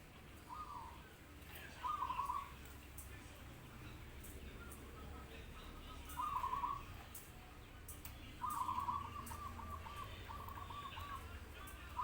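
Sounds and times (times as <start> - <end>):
doves cooing: 0.4 - 2.6, 6.0 - 7.0, 8.4 - 12.0.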